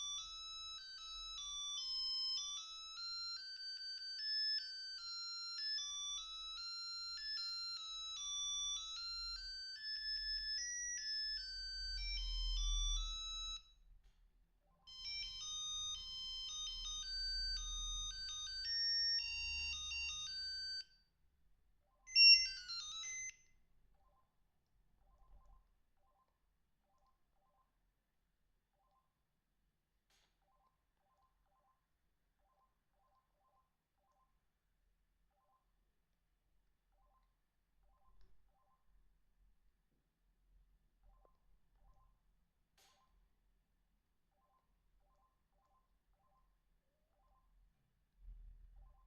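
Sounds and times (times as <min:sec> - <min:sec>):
beeping electronic ringtone melodies: 0:00.0 - 0:13.7, 0:14.8 - 0:21.0, 0:22.1 - 0:23.4.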